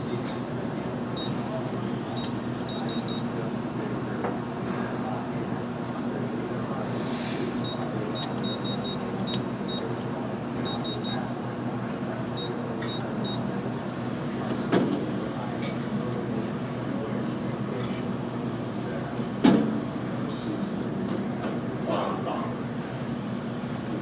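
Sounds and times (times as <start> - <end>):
short electronic beeps: 10.6 - 11.2.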